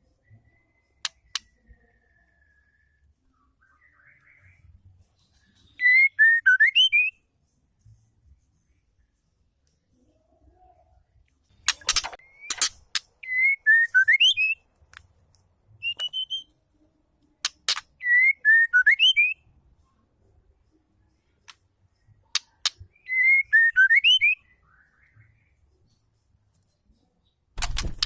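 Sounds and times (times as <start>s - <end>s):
bird whistled phrase: 5.8s - 7.2s, 23.0s - 24.5s.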